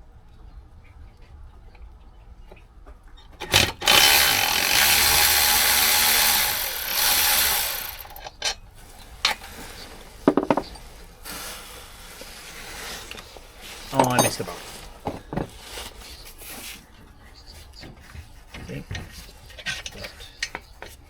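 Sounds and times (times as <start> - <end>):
power tool running: 3.5 - 8.2.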